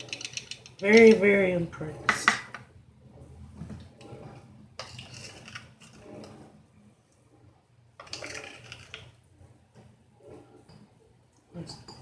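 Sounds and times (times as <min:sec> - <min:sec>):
handling scrapes and rustles: 0:04.1 - 0:06.6, 0:08.0 - 0:09.1.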